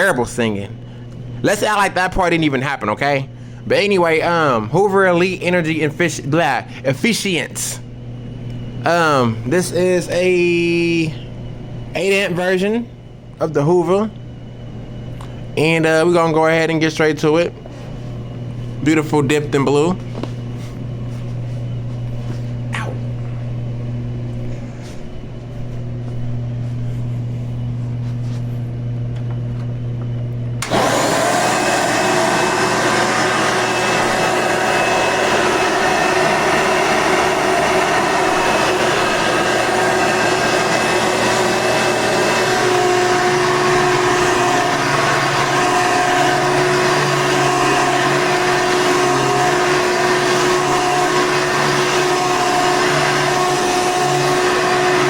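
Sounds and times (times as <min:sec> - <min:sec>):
steady whine: 0:00.0 - 0:55.0
vacuum cleaner running: 0:00.0 - 0:55.0
low hum: 0:07.7 - 0:30.7.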